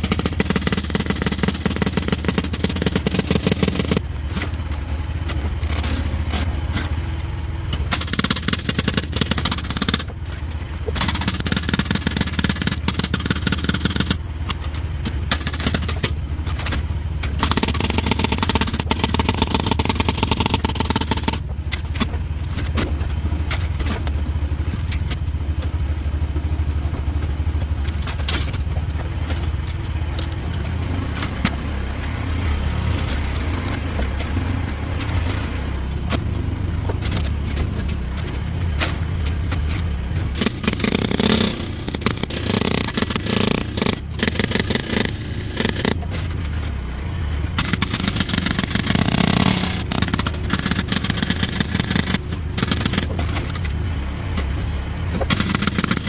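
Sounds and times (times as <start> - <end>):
hydraulic breaker hammering rock: 0.0 - 4.6, 5.3 - 7.0, 7.7 - 10.2, 10.8 - 24.1, 36.1 - 46.3, 47.5 - 53.8, 54.4 - 56.0
excavator engine running: 0.0 - 56.0.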